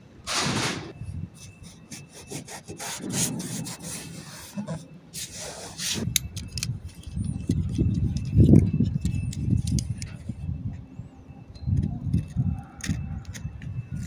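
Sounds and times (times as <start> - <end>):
hand rubbing vinyl tape: 1.4 - 6.2.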